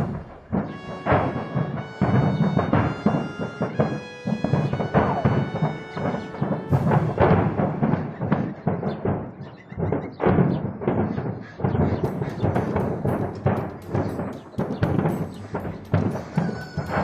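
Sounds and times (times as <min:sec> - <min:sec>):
dramatic background music: 0:00.0 - 0:08.4, 0:12.1 - 0:17.0
held orchestral tones: 0:00.0 - 0:08.5, 0:12.1 - 0:17.0
heavy drum hits: 0:00.0 - 0:09.1, 0:12.0 - 0:17.0.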